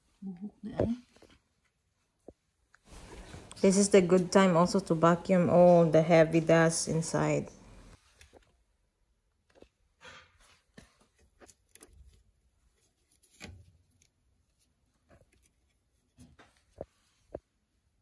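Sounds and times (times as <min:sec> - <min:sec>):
faint clicks and knocks of parts: 0:09.3 - 0:17.6.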